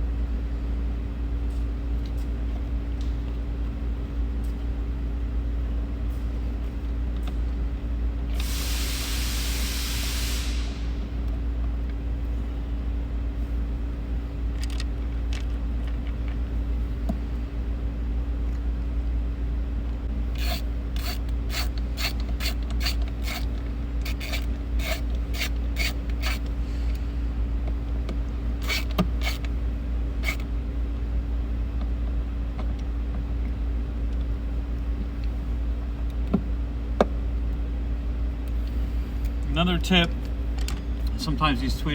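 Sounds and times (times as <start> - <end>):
steady low hum: 0.0 - 41.9
brief rushing hiss: 8.5 - 11.1
ratcheting screwdriver clicking: 20.4 - 26.5, 28.6 - 29.5.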